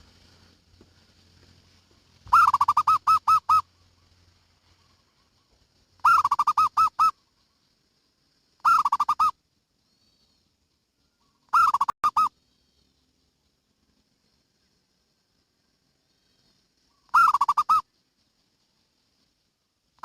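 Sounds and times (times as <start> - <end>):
dove cooing: 2.3 - 3.8, 6.0 - 7.2, 8.6 - 9.3, 11.5 - 12.3, 17.0 - 17.8.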